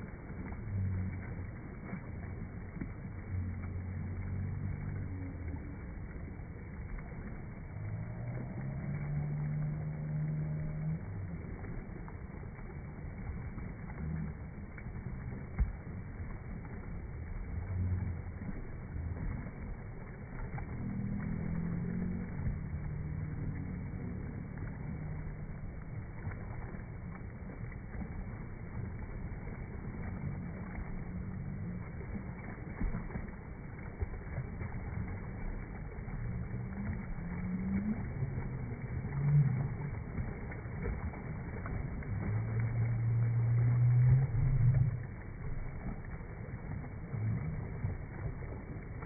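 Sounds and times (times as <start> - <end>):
low hums: 0.0 - 49.0.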